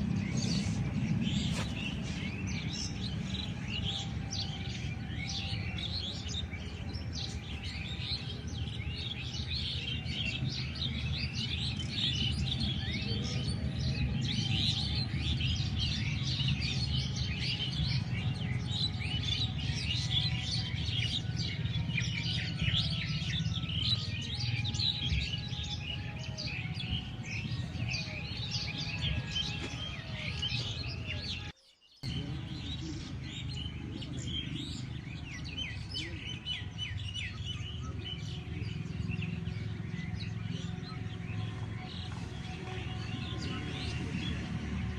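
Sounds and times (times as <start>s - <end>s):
steady low rumble: 0.0s - 4.4s
birds chirping and twittering: 0.0s - 44.9s.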